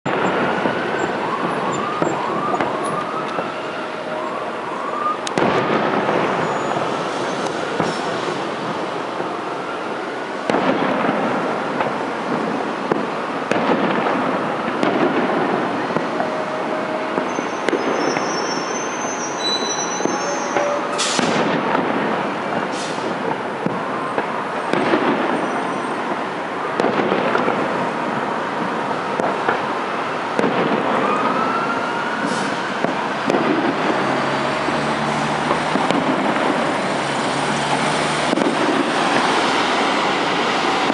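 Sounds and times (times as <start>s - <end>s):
fireworks bangs: 0.1s - 40.9s
rising whistles: 17.3s - 20.9s.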